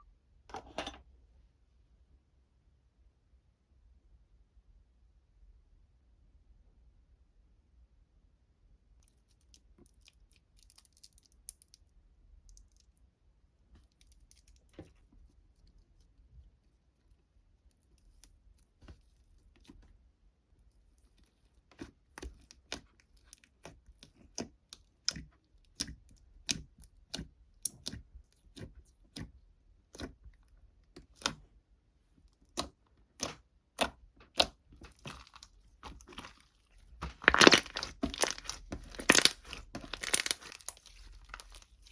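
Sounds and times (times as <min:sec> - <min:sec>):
crackling and crunching clicks: 0:32.6 - 0:41.9.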